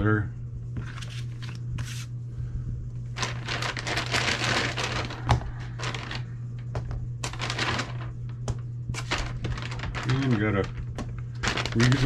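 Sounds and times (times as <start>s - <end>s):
steady low hum: 0.0s - 12.0s
plastic packaging crinkling: 3.1s - 6.3s, 7.2s - 12.0s.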